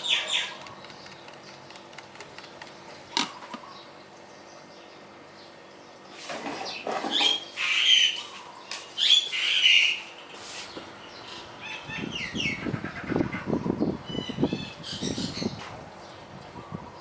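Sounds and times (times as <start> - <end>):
birds squawking: 0.0 - 0.8, 6.5 - 10.2, 11.0 - 15.6
low pulsing calls: 11.2 - 15.6.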